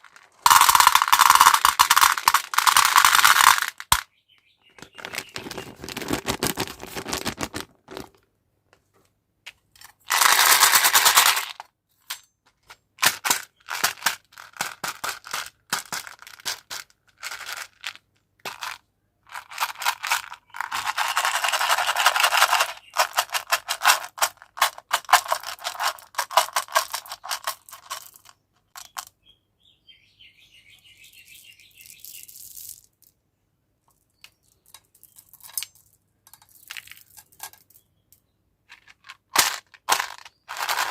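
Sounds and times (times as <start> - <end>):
hard candies clattering: 0.0 - 4.0, 4.8 - 8.2, 10.1 - 11.6, 13.0 - 29.0, 38.8 - 40.9.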